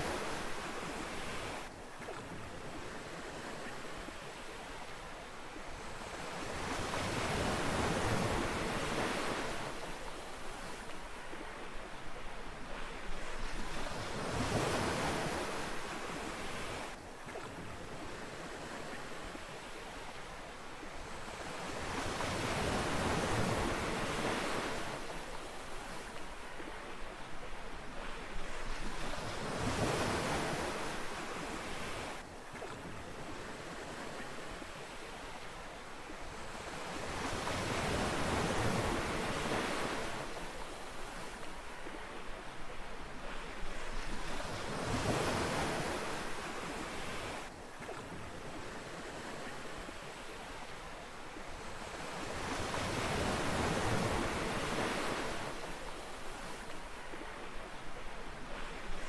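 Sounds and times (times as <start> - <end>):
ocean waves washing onto beach: 0.0 - 59.0.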